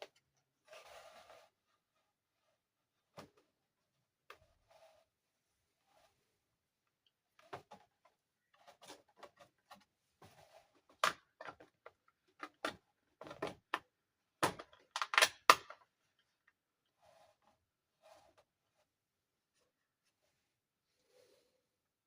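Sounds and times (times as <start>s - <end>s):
plastic toy parts clicking: 14.4s - 15.8s.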